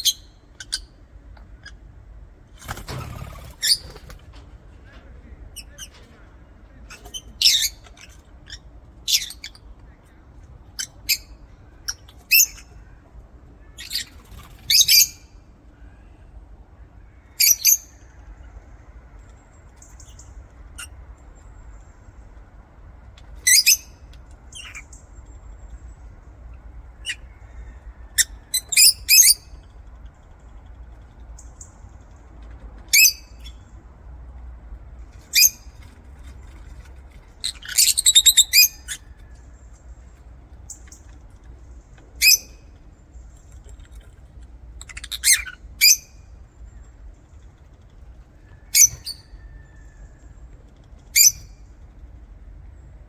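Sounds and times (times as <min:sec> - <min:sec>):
faint low hum: 0:00.0 - 0:53.0
lovebirds chirping: 0:05.5 - 0:15.9, 0:23.4 - 0:29.6, 0:35.1 - 0:41.2, 0:42.2 - 0:44.1, 0:44.7 - 0:46.9, 0:51.1 - 0:51.6.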